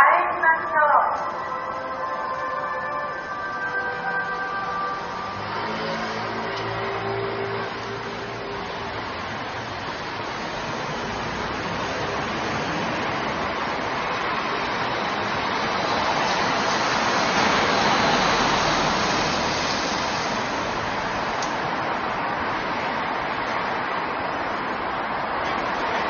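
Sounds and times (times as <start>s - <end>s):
traffic tyres and engines hissing: 1.4s - 26.0s
vehicle passing by: 5.1s - 21.3s.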